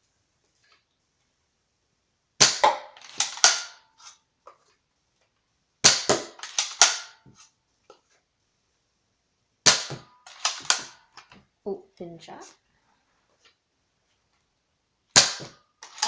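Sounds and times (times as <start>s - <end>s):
toy dart pistol firing: 2.4s - 3.8s, 5.8s - 7.2s, 9.7s - 11.0s, 15.1s - 16.0s.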